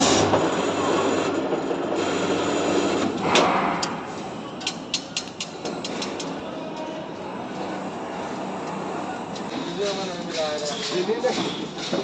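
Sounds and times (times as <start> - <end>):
sharp metallic clicks and knocks: 4.6 - 6.4.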